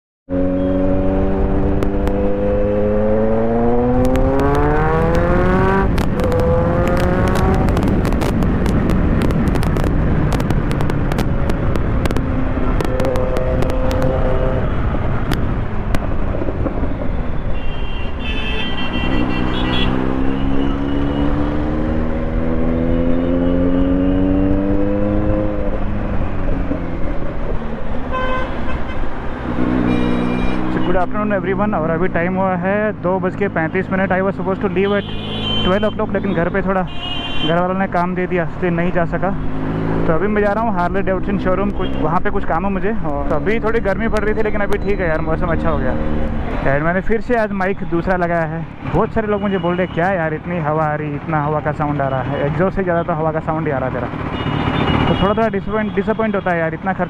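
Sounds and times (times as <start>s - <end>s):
engine revving and accelerating: 0.3s - 8.7s, 19.2s - 26.7s, 39.1s - 41.6s, 43.3s - 46.6s
sharp engine crackles: 3.4s - 16.8s.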